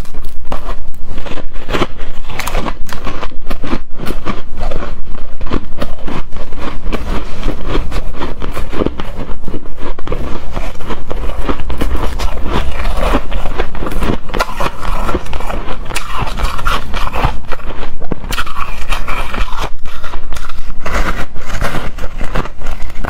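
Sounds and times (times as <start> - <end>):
shaved ice crunching: 11.2 - 23.0.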